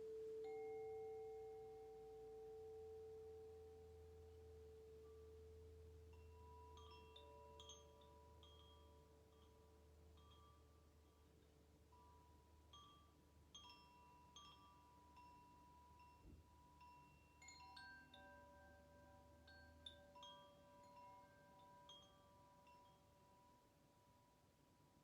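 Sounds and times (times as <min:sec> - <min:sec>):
chimes ringing softly: 0:00.0 - 0:25.0.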